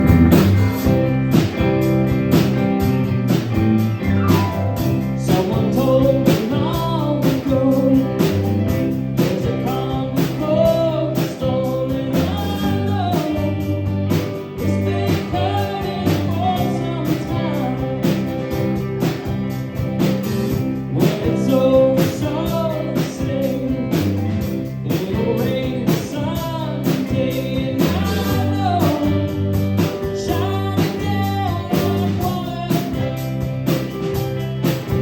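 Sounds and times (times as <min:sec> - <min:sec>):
rock band playing: 0:00.0 - 0:35.0.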